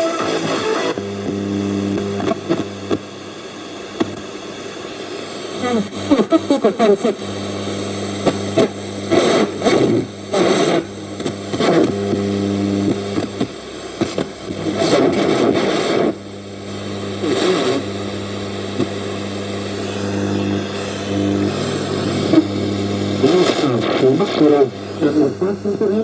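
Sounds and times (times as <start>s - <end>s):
snatches of radio broadcast: 0.0s - 3.1s, 5.1s - 26.0s
radio static: 0.0s - 26.0s
steady low hum: 0.9s - 26.0s.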